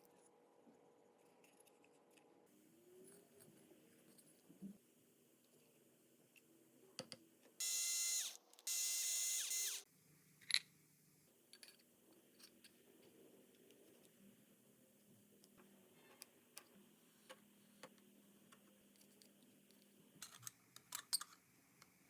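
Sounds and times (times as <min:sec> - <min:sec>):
electric power tool whining: 0:07.6 - 0:09.8.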